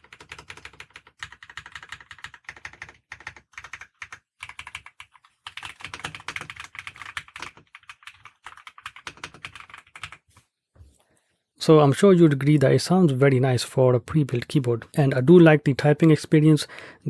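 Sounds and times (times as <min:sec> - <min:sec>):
mechanical keyboard typing: 0:00.0 - 0:10.2.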